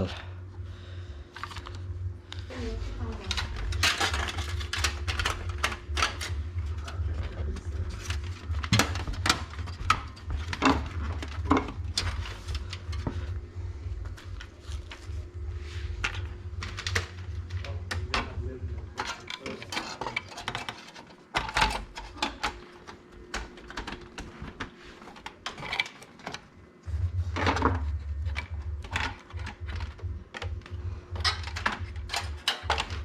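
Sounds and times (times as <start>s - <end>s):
steady low hum: 0.0s - 33.0s
computer parts clicking and knocking: 3.1s - 13.4s, 15.9s - 33.0s.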